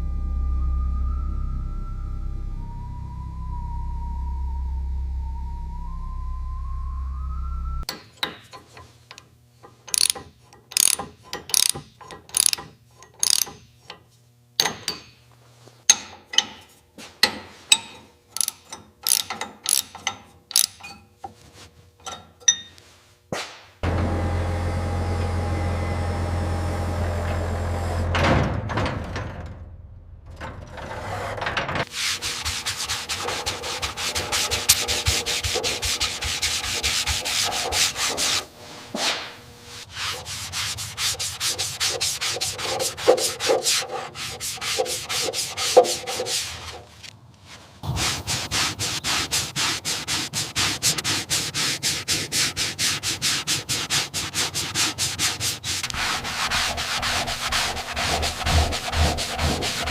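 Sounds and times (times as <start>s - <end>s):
low steady hum: 0.0s - 7.9s
hand sanding scrubbing strokes: 31.8s - 59.9s.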